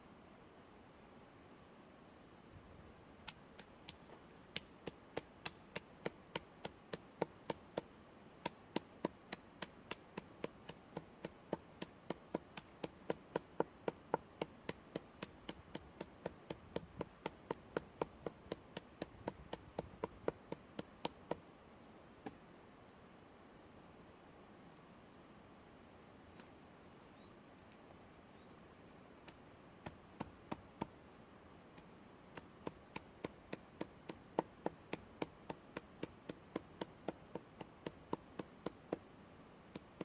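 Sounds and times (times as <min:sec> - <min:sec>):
sharp rhythmic taps: 0:03.2 - 0:21.4, 0:32.4 - 0:39.0.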